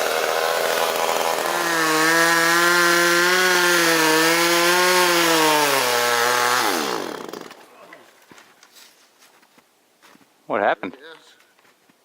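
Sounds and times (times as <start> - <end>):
chainsaw running at high revs: 0.0 - 7.6.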